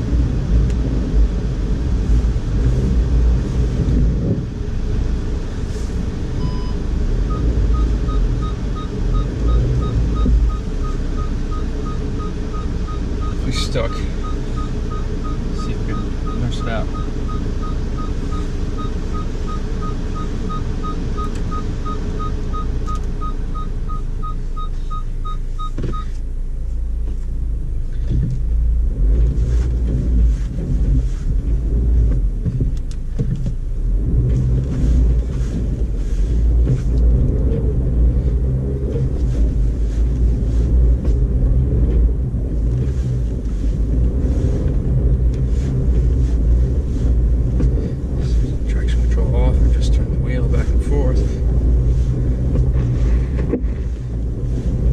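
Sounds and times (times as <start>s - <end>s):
car engine idling: 0.0s - 54.9s
car engine revving rumble: 0.0s - 54.9s
electronic warning beep: 6.4s - 26.1s.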